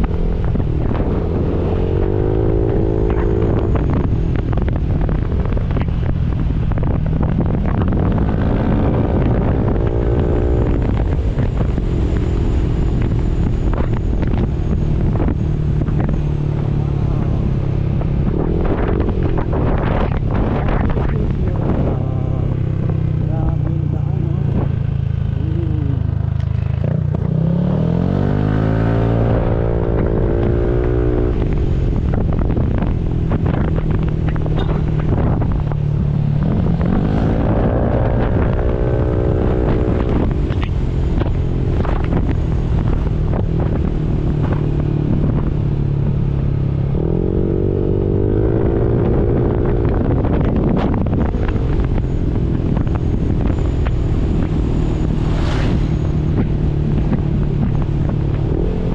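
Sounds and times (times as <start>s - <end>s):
low rumble: 0.0s - 58.9s
motorcycle engine revving: 0.0s - 58.9s.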